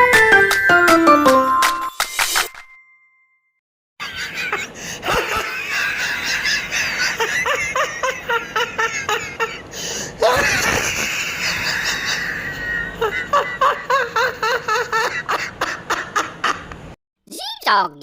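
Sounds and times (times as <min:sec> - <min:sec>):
group of people laughing: 0:04.0 - 0:16.8.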